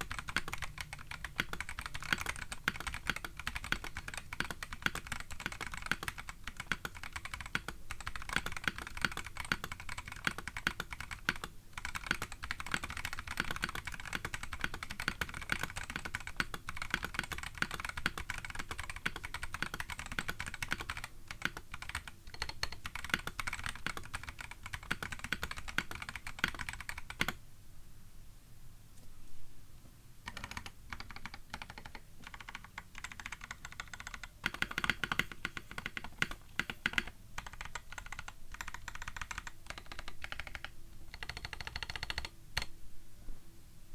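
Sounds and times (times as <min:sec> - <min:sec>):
fast mechanical keyboard typing: 0:00.0 - 0:27.4, 0:30.3 - 0:42.7.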